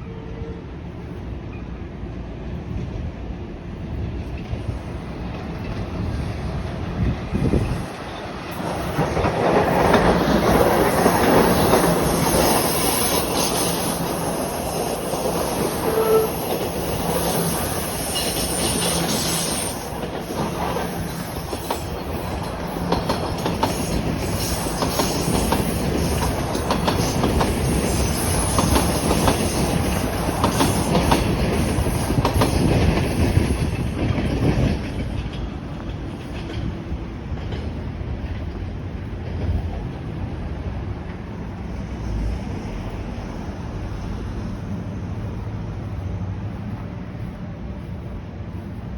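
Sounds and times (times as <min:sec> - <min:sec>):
wheels clicking over rail joints: 0:04.0 - 0:41.6
subway wheels squealing: 0:05.5 - 0:37.6.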